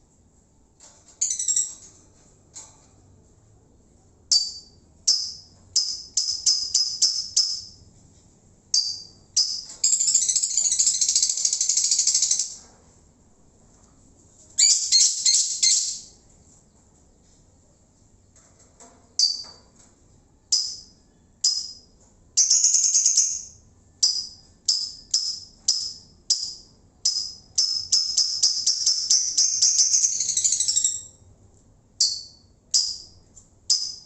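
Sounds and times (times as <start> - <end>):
lovebird chirping: 4.3 - 7.8, 8.7 - 12.6, 14.6 - 16.2, 22.4 - 31.2
lovebird chattering trill: 8.8 - 12.6, 22.4 - 31.1.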